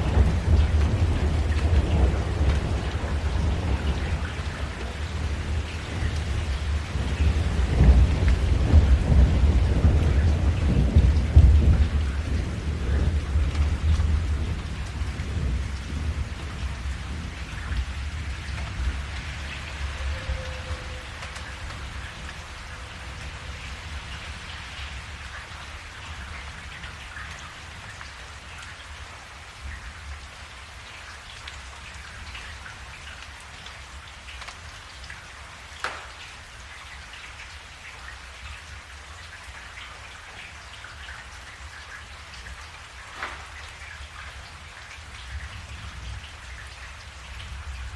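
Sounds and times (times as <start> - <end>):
deep rumble of thunder: 0.0 - 27.4
steady rain: 0.0 - 47.9.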